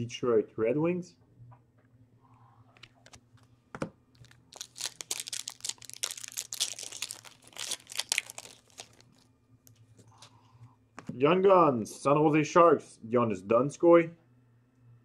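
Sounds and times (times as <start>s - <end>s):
wrapper crackling and tearing: 4.1s - 9.8s.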